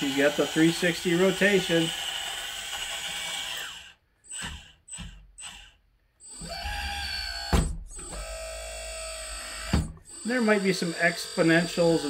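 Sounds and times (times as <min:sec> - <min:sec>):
electric hydraulic pump whining: 0:00.0 - 0:12.0.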